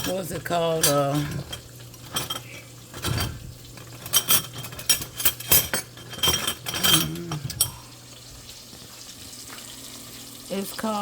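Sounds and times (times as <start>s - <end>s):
kitchen utensils clinking: 0.0s - 8.0s.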